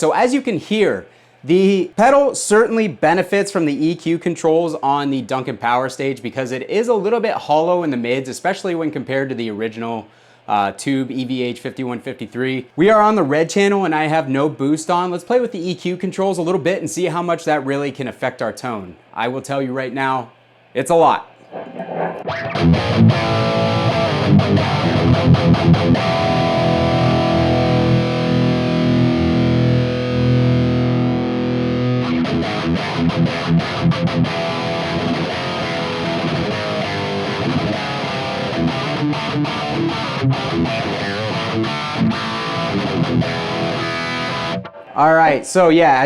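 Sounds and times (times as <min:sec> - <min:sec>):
distorted electric guitar riffs: 0:21.5 - 0:45.0.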